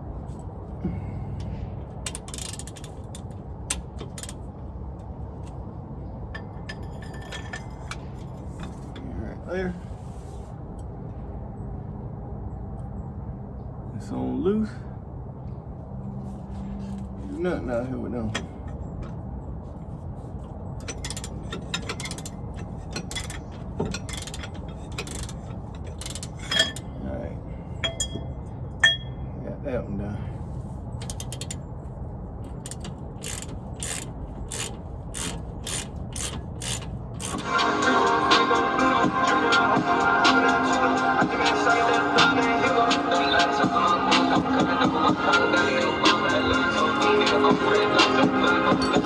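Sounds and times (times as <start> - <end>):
socket ratchet clicking: 2.1 - 4.4, 20.8 - 26.8, 31.0 - 31.6, 32.5 - 37.4
ringing metal clink: 26.1 - 26.9, 27.8 - 29.3, 48.7 - 49.0
metallic clinks of hand tools: 46.5 - 49.0.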